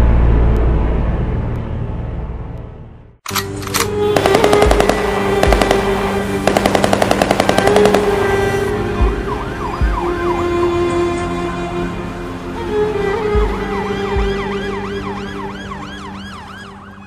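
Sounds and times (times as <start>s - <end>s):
machine-gun fire: 3.3s - 8.7s
siren wailing: 4.2s - 17.0s.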